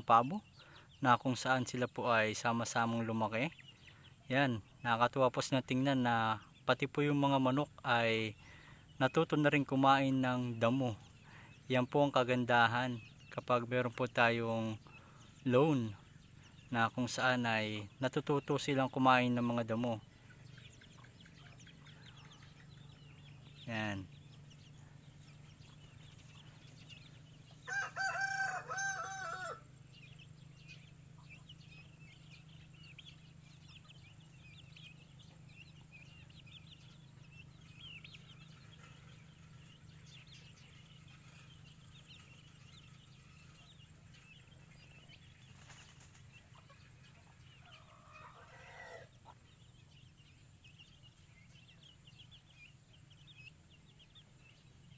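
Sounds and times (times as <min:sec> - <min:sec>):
rooster crowing: 0:27.6 - 0:29.7, 0:47.6 - 0:49.1.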